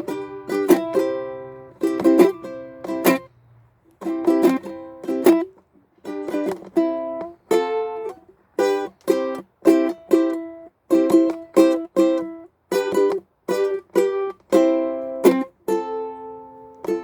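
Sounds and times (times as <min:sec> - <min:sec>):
ukulele strumming: 0:00.0 - 0:17.0.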